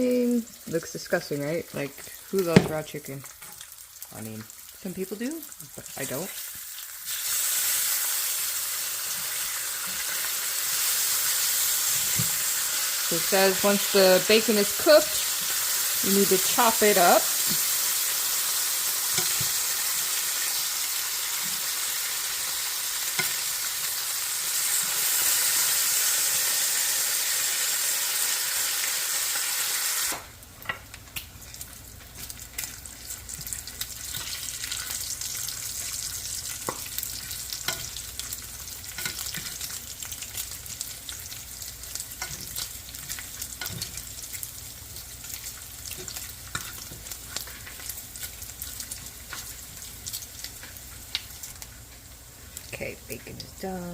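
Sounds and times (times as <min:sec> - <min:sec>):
bacon sizzling in a pan: 0:00.0 - 0:53.9
crackling with pops: 0:30.1 - 0:35.0, 0:36.5 - 0:38.0.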